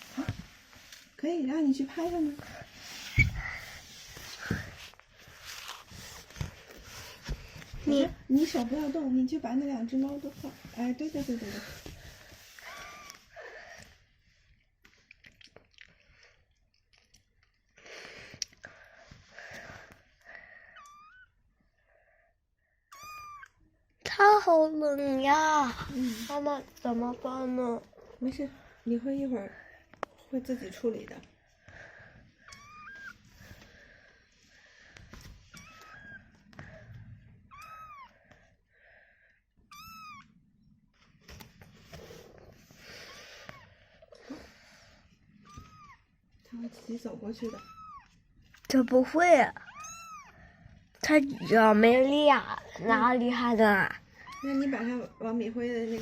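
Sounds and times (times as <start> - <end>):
faint rustling and handling: 0.0 - 15.2, 24.5 - 38.5, 40.8 - 56.0.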